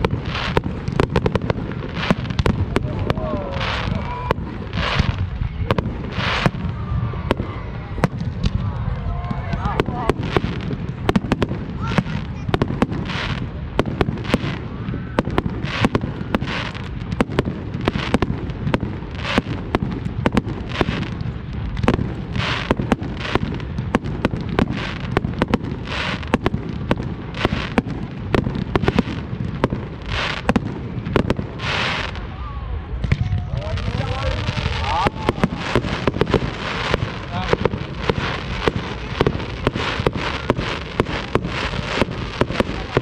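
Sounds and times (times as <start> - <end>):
firework hissing bursts: 0.0 - 8.5, 9.8 - 32.3, 33.7 - 43.0
firework bangs and crackles: 0.0 - 43.0.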